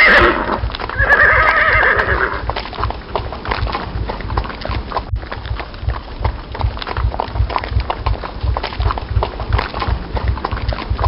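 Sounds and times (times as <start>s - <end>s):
horse neighing: 0.0s - 2.5s
hoofbeats clopping: 0.0s - 11.0s.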